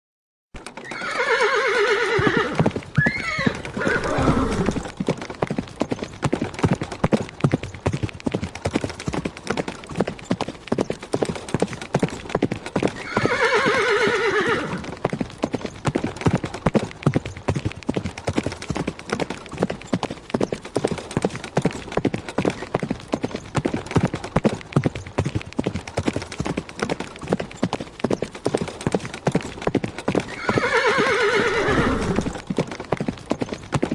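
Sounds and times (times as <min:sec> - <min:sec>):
horse hoofbeats galloping: 0:00.6 - 0:33.9
horse whinnying: 0:00.8 - 0:05.0, 0:13.0 - 0:14.9, 0:30.2 - 0:32.4.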